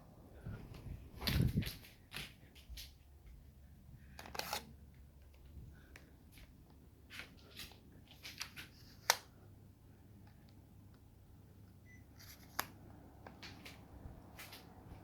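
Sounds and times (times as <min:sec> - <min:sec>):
faint low hum: 0:00.0 - 0:15.0
light clicks and rustles: 0:04.1 - 0:09.4.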